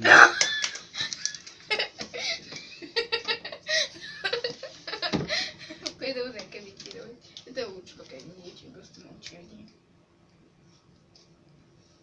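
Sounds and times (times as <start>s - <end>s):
people giggling: 0.0s - 5.3s.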